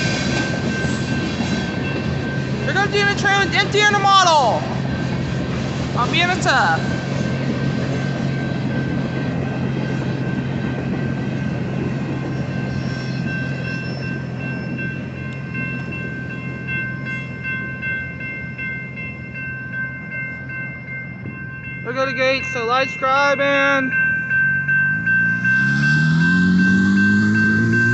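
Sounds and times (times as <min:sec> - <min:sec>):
freight train rumbling past: 0:00.0 - 0:27.9
train wheels on rails: 0:00.0 - 0:27.9
high-pitched ringing tones: 0:06.0 - 0:27.9.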